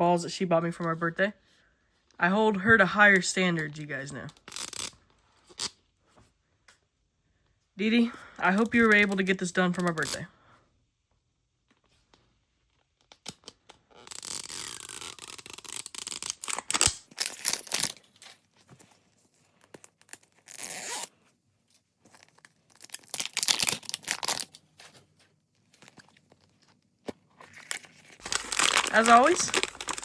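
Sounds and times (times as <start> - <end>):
packaging ripping and rustling: 14.1 - 18.5, 22.0 - 25.0, 27.3 - 30.0.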